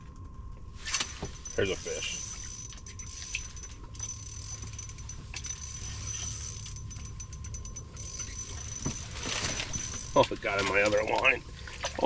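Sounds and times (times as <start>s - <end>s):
fishing reel clicking: 0.8s - 10.3s.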